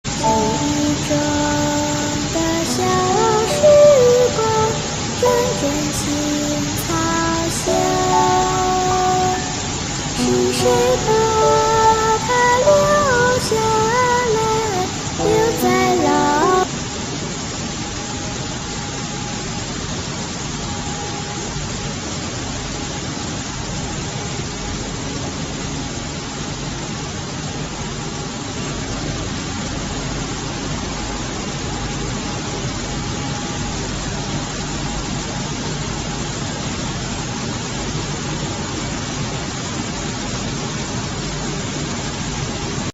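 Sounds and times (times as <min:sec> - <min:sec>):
faint hum: 0:00.0 - 0:18.4.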